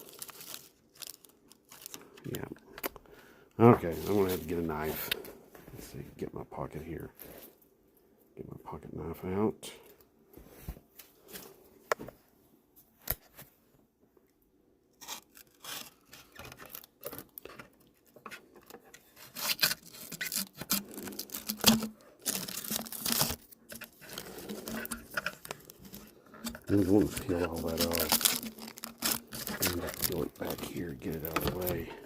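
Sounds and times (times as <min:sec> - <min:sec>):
material tearing and crinkling: 0:00.0 - 0:02.2, 0:15.0 - 0:31.9.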